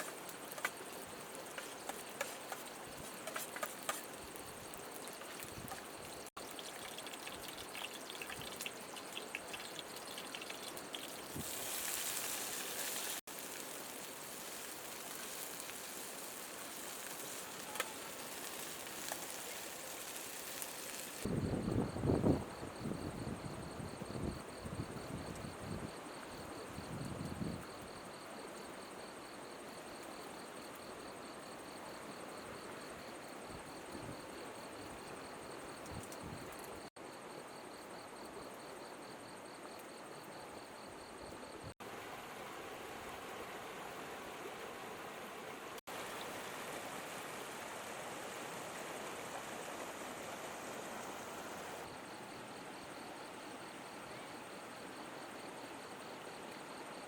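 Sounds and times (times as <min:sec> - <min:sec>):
insects trilling: 0:00.0 - 0:41.3
wind rumble on microphone: 0:21.3 - 0:26.0, 0:26.7 - 0:27.7, 0:35.8 - 0:36.6
river water flowing: 0:41.8 - 0:51.9.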